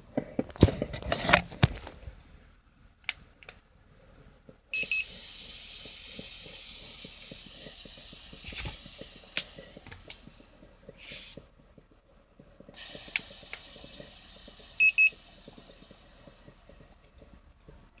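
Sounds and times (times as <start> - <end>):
coffee maker hissing: 4.7 - 11.6, 12.6 - 18.0
short high beeps: 4.8 - 5.2.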